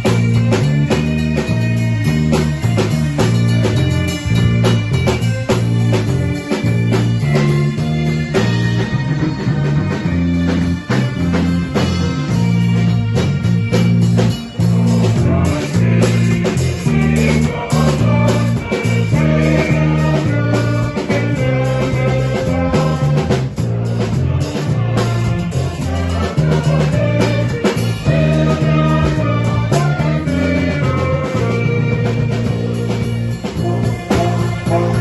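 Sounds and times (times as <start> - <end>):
instrumental band music: 0.0 - 35.0.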